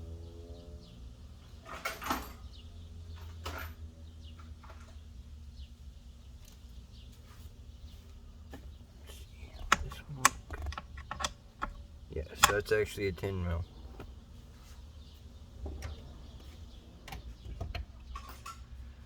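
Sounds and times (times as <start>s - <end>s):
low steady hum: 0.0s - 19.0s
tools rustling and clattering: 1.6s - 5.0s, 15.7s - 19.0s
socket clicking on nut: 9.6s - 11.8s, 12.4s - 12.7s.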